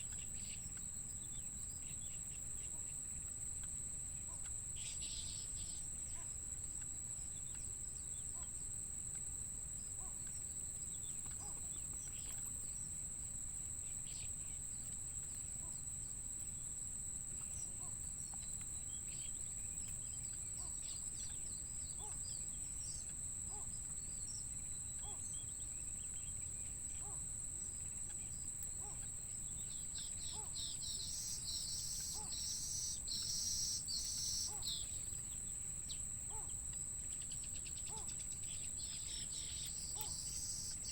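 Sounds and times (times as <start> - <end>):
high-pitched insect trill: 0.0 - 40.9
bird chirps: 28.8 - 36.5, 37.1 - 40.9.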